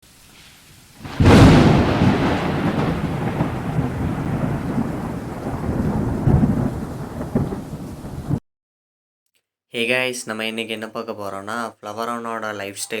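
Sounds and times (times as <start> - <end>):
rain: 0.0 - 8.4
thunder rumbling: 1.0 - 8.4.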